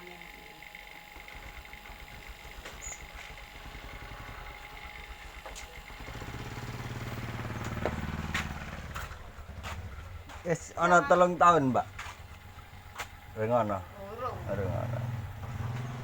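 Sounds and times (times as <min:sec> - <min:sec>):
vehicle engine passing: 0:03.6 - 0:16.0.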